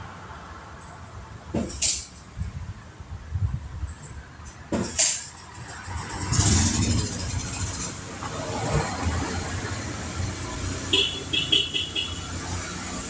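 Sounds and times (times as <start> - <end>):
engine rumbling: 3.9 - 13.0.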